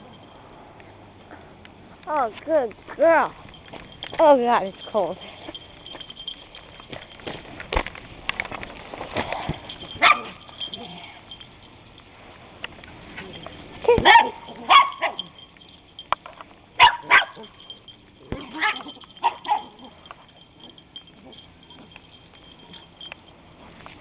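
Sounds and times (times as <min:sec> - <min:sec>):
puppy barking: 0:10.0 - 0:10.5, 0:14.0 - 0:15.3, 0:16.8 - 0:17.7, 0:18.4 - 0:20.0.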